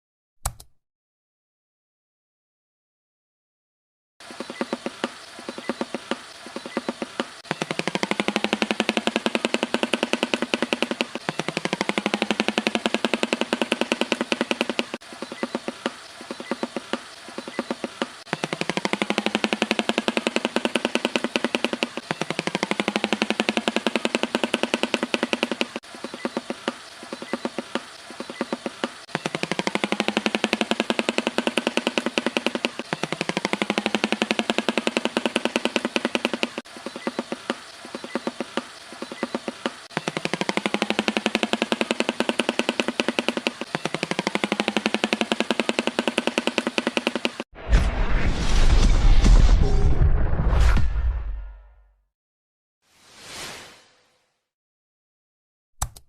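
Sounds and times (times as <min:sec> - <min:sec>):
animal pulsing trill: 0:07.5 - 0:15.6, 0:18.3 - 0:26.4, 0:29.1 - 0:37.2, 0:40.0 - 0:47.4.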